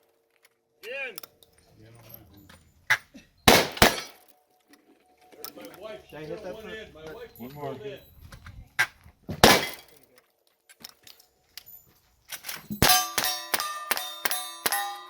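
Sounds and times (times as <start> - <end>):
gunshots: 3.5 - 4.2, 9.4 - 10.0
steel target clanging: 9.4 - 10.0, 12.4 - 15.0.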